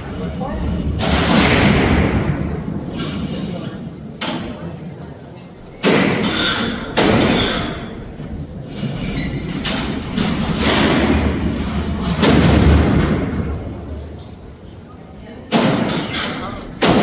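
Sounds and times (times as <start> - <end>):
loud metal bangs: 0.0 - 4.8, 5.6 - 17.0
steel cell doors clanking and rumbling: 0.0 - 17.0.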